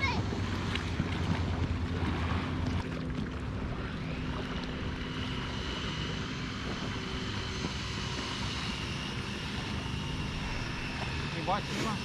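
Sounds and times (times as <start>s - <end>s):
engine drone: 0.0s - 12.0s
high whine: 3.4s - 12.0s.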